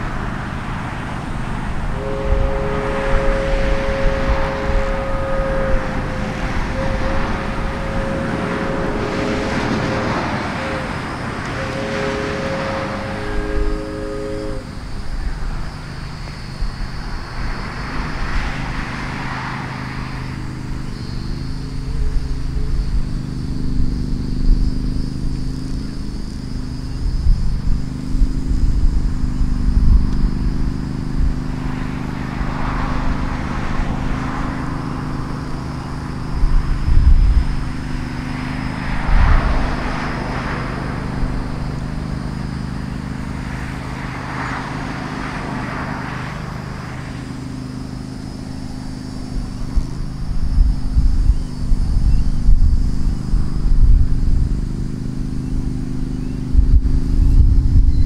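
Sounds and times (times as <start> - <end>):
locomotive air horn: 0.0 - 50.2
diesel engine drone: 0.0 - 58.0.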